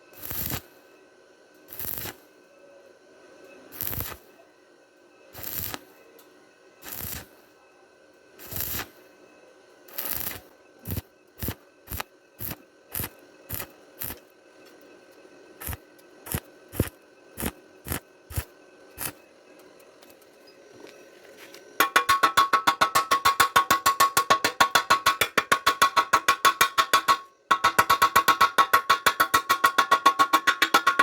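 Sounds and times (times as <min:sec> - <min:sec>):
sharp knocks: 0:21.8 - 0:31.0.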